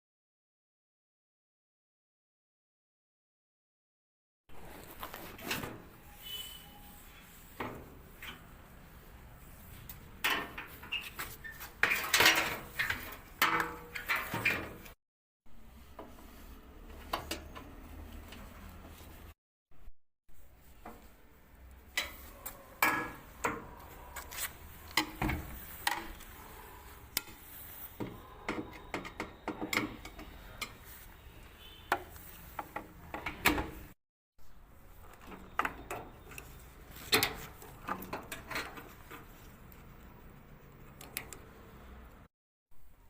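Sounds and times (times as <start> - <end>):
clicks and knocks of parts and tools: 9.9 - 15.0, 21.8 - 26.3, 27.1 - 30.8, 35.0 - 40.0.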